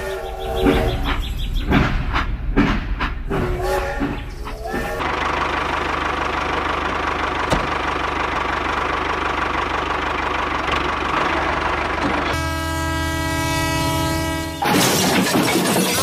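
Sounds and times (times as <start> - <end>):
tractor engine idling: 4.4 - 14.3
train horn blowing: 12.3 - 14.8.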